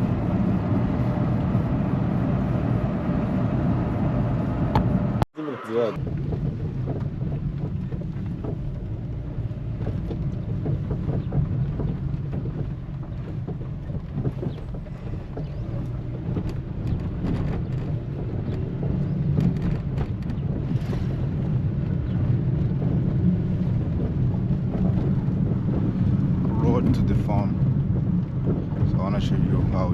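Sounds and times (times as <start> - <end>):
engine and road rumble: 0.0 - 29.9
knocks and rattles: 6.0 - 29.9.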